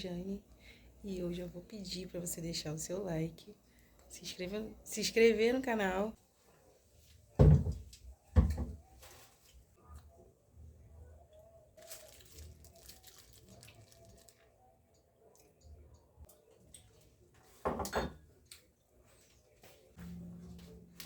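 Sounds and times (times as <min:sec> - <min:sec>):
steady low hum: 0:20.0 - 0:21.0.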